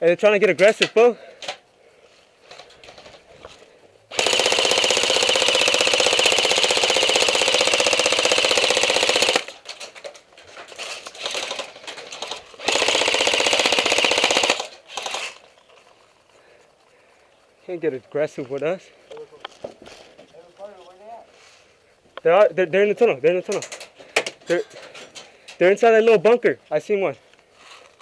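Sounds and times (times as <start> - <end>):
airsoft rifle full-auto rattle: 2.4 - 16.4.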